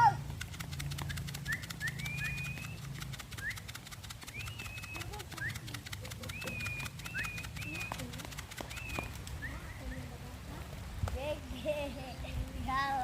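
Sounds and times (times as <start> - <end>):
pigeon cooing: 0.0 - 10.8
steady low hum: 0.0 - 12.7
birds whistling and chirping: 0.9 - 10.2.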